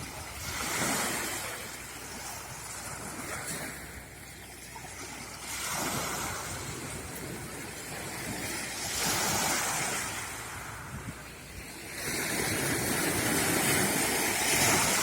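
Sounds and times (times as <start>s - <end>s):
sea waves breaking on shore: 0.0s - 15.0s
wind on microphone: 5.6s - 15.0s.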